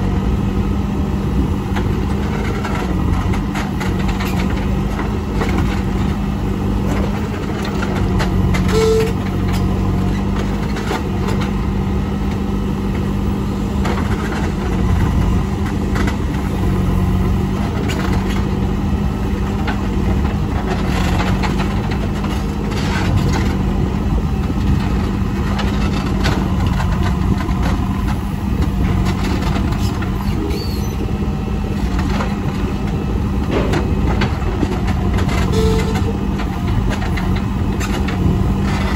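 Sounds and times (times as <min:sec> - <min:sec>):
diesel engine running: 0:00.0 - 0:38.9
short knocks and clanks: 0:33.4 - 0:38.9.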